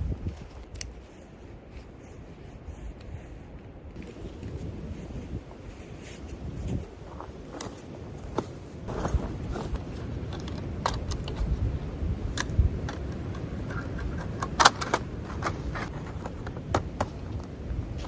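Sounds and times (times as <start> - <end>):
light clicks and clinks: 7.1 - 17.7.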